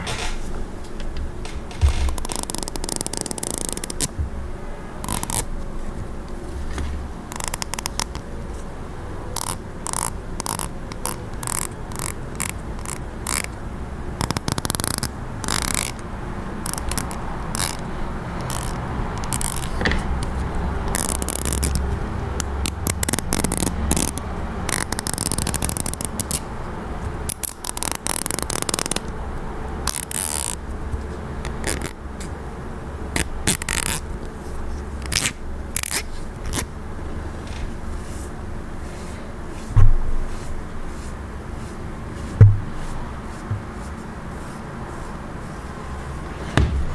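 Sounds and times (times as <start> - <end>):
comb being scraped: 1.4 - 4.2, 5.0 - 8.7, 9.3 - 13.6, 16.6 - 26.5, 37.5 - 46.9.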